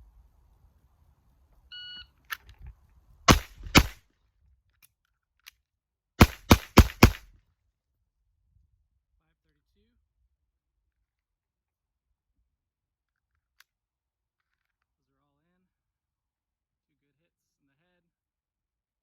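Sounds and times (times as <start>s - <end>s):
faint reload clicks: 3.3s - 4.0s, 6.2s - 7.2s
pistol shots: 3.3s - 4.0s, 6.2s - 7.3s.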